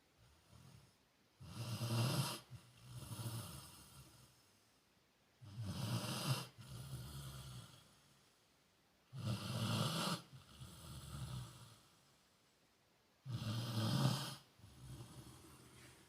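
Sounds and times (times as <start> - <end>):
dog snoring: 0.2 - 4.5, 5.4 - 8.1, 9.1 - 12.1, 13.2 - 16.0.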